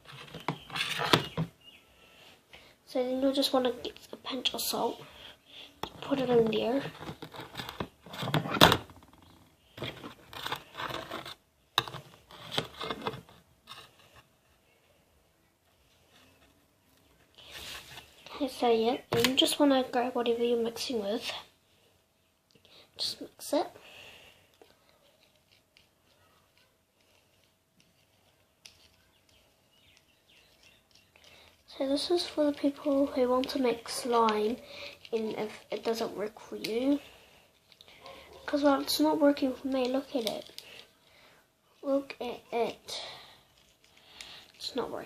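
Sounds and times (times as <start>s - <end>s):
scraping and rustling: 0.0s - 1.5s, 5.8s - 14.7s, 15.8s - 18.3s.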